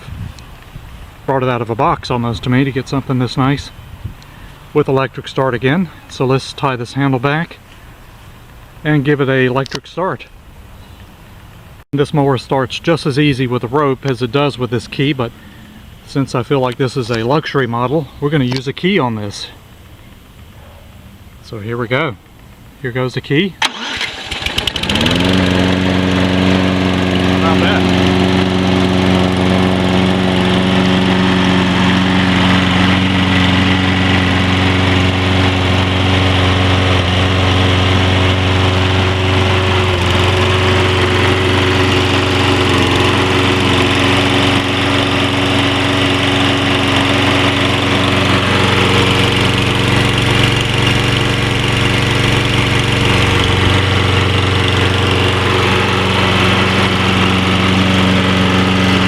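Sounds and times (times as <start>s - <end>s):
lawn mower engine running: 23.6s - 59.0s.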